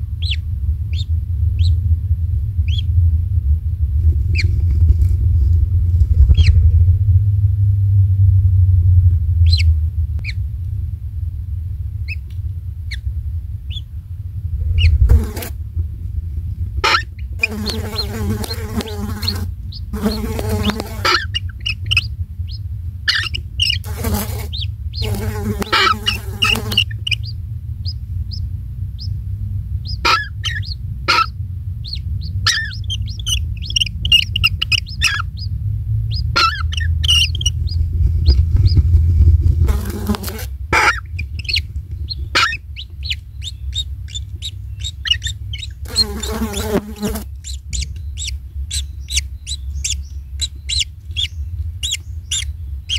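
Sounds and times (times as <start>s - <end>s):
steady low rumble: 0.0s - 52.9s
high bird chirps: 16.9s - 29.2s, 29.8s - 38.8s, 39.7s - 52.9s.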